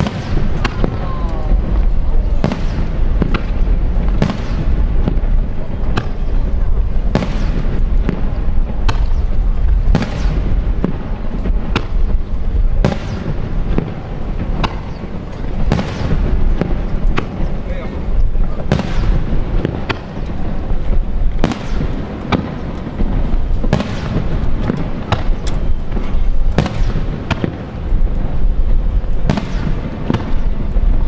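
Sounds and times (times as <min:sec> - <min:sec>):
firework shells bursting: 0:00.0 - 0:31.0
low rumble: 0:00.2 - 0:19.6.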